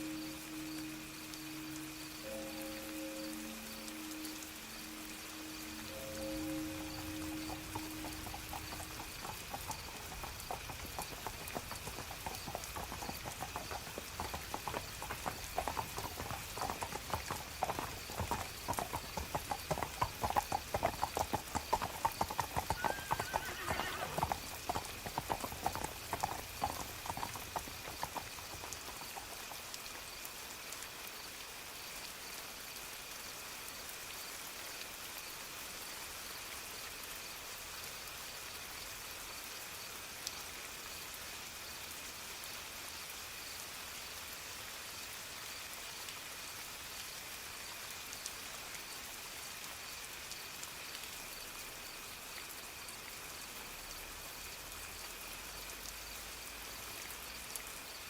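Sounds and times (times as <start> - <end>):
steady rain: 0.0 - 58.0
horse hooves clip-clopping: 5.9 - 30.0
horse whinny: 21.2 - 24.4.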